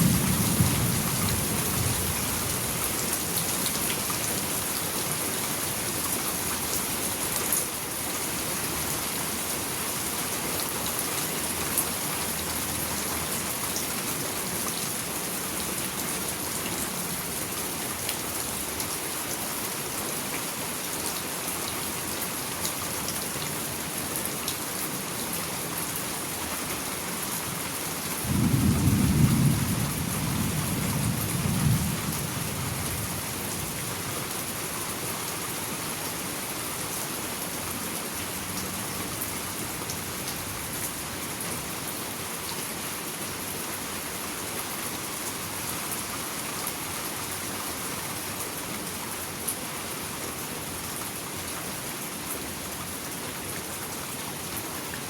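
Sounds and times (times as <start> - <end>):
low rumble of thunder: 0.0 - 2.8, 28.2 - 34.0
steady rain hissing: 0.0 - 55.0.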